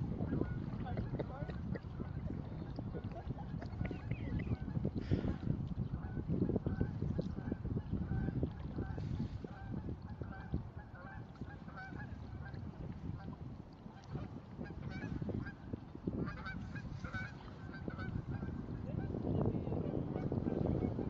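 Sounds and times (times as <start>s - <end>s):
waterfowl honking: 0.2s - 2.1s, 8.1s - 12.6s, 14.0s - 15.6s, 16.2s - 19.2s.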